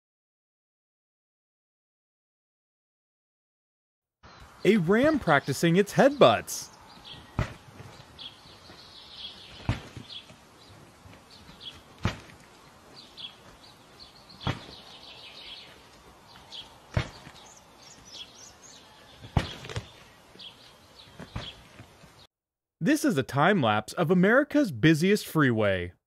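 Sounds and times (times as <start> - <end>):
birds chirping: 4.2 - 22.3
ram head butting thud: 7.3 - 8.0, 9.6 - 10.2, 11.5 - 12.5, 14.4 - 14.8, 16.9 - 17.4, 19.2 - 19.9.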